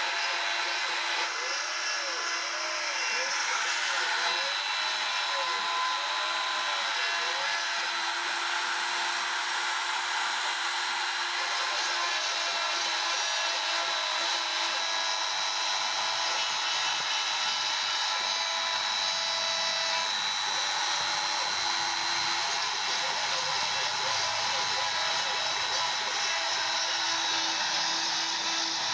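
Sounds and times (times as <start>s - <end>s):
router spindle high whine: 0.0s - 28.9s
stepper motors humming: 12.3s - 28.9s.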